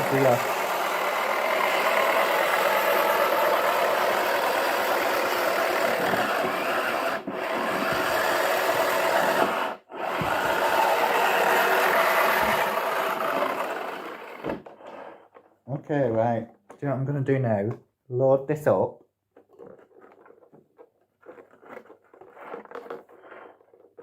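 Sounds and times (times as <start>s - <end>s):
plastic balls tumbling rattling: 0.0s - 9.2s, 19.3s - 24.0s
toy washing machine motor: 0.0s - 15.0s.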